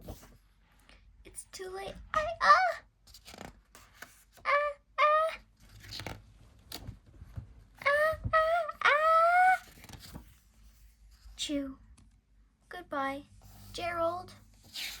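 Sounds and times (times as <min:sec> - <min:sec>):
faint rustles and taps: 0:05.7 - 0:08.4.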